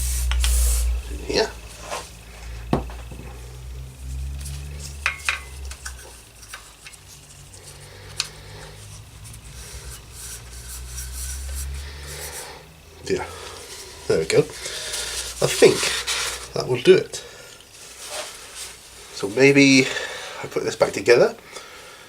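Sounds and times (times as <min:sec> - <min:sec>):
hands rubbing and scraping: 0:00.0 - 0:02.2, 0:04.4 - 0:16.5
low steady hum: 0:00.0 - 0:22.0.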